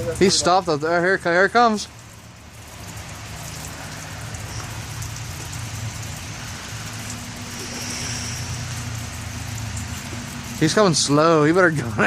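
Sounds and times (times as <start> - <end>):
vehicle engine droning: 0.0 - 12.0
steady hiss: 3.0 - 11.5.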